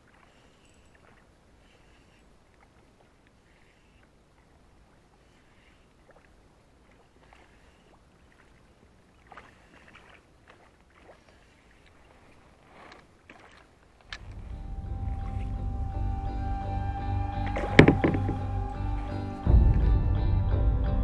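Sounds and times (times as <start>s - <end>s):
water splashing and lapping: 0.0s - 20.0s
low rumble: 14.2s - 21.0s
music: 14.3s - 21.0s.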